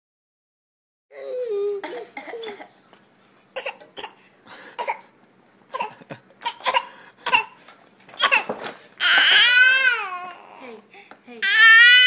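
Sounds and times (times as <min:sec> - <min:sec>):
baby fake coughing: 0:01.8 - 0:02.8, 0:03.6 - 0:07.6, 0:08.2 - 0:10.0.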